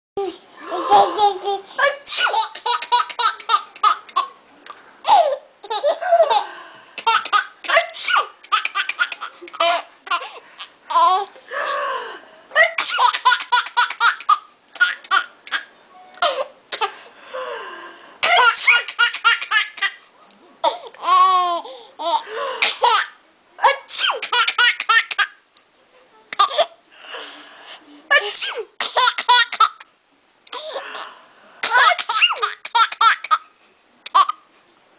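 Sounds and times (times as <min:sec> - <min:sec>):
baby laughing: 0:00.2 - 0:04.4, 0:05.0 - 0:11.3, 0:12.6 - 0:16.9, 0:18.2 - 0:20.0, 0:20.6 - 0:23.2, 0:24.1 - 0:25.4, 0:26.3 - 0:26.8, 0:28.9 - 0:29.9, 0:31.6 - 0:34.4.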